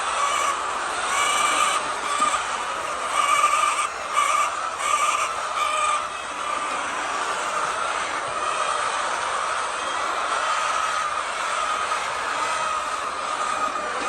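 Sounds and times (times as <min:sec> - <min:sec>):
chickens clucking and squawking: 0:00.0 - 0:14.0.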